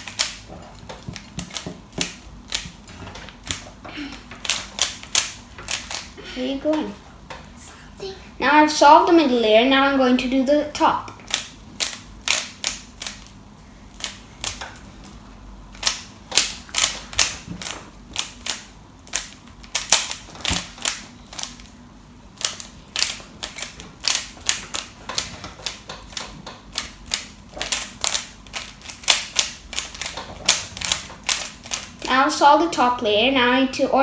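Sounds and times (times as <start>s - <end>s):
plastic puzzle cube clicking: 0.0s - 2.8s, 4.2s - 6.2s, 11.1s - 13.3s, 13.9s - 14.7s, 15.8s - 21.7s, 22.4s - 32.1s.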